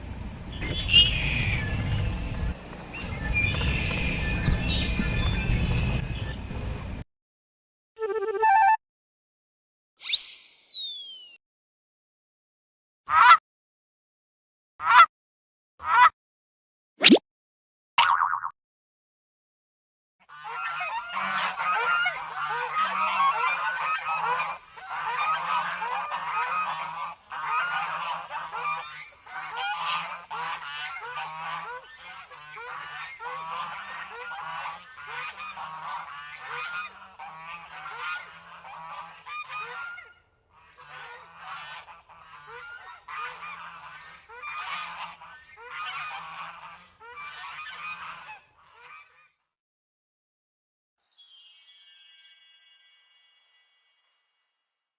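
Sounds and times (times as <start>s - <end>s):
geese honking: 0.0s - 7.0s, 20.3s - 49.2s.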